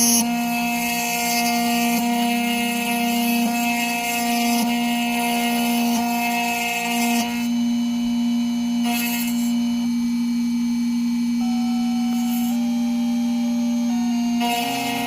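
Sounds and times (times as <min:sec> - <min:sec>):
cutter hissing in metal: 0:00.0 - 0:07.5, 0:08.8 - 0:09.6, 0:12.1 - 0:12.7, 0:14.1 - 0:15.0
key-cutting machine motor whine: 0:00.0 - 0:15.0.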